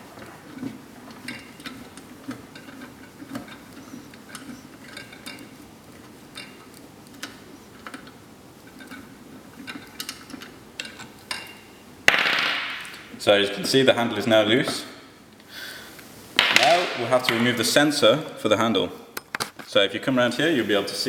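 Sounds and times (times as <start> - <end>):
sharp knocks: 12.1 - 13.0, 16.4 - 17.6.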